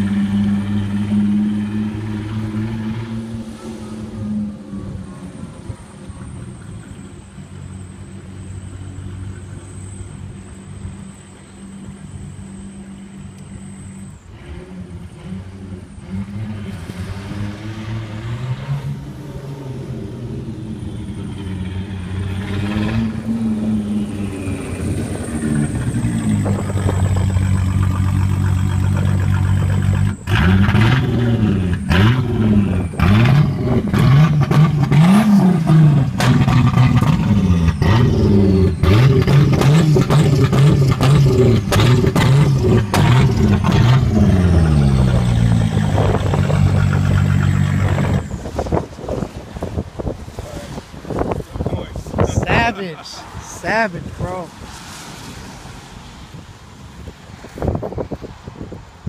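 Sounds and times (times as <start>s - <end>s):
turbocharged car engine revving: 0.0s - 5.0s, 14.3s - 50.1s.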